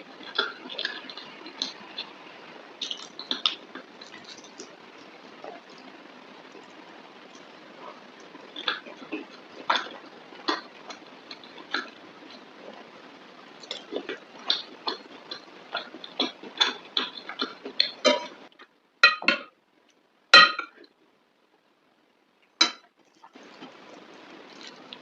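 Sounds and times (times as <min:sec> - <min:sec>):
wet chewing and mouth clicks: 0:00.0 - 0:18.7, 0:22.6 - 0:25.0.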